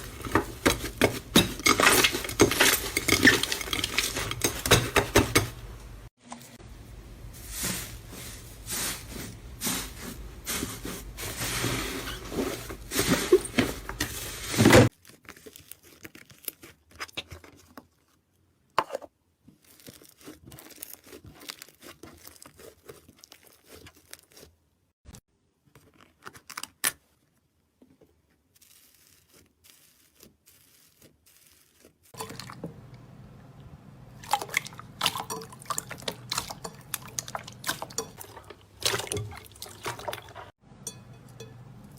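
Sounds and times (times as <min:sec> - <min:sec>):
slime crackling and crunching: 0:14.9 - 0:17.7, 0:19.5 - 0:24.6, 0:28.5 - 0:32.2.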